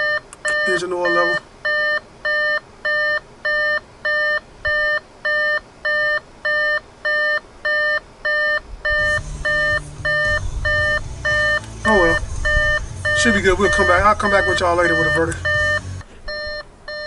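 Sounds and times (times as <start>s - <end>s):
car warning chime beeping: 0.0s - 17.0s
low rumble: 8.7s - 16.6s.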